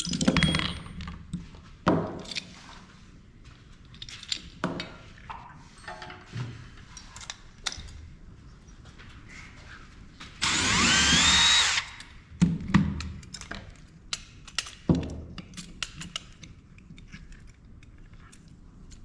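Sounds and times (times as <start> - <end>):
power driver whirring: 10.4 - 12.1
knocks and clicks of parts handled: 12.3 - 16.6.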